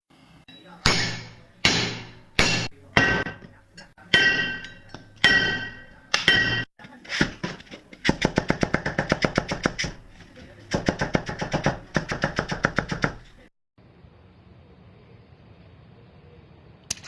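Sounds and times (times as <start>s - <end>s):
sharp ringing strikes: 4.1s - 6.7s.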